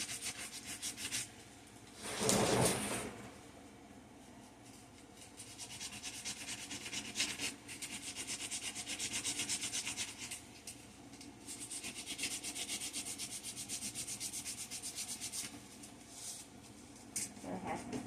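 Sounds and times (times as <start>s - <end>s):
sandpaper rubbing on wood: 5.4s - 10.2s, 11.6s - 15.5s.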